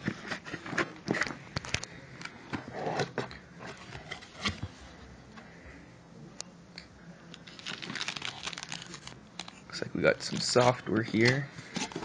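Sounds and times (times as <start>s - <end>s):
packaging rustle: 7.4s - 12.0s.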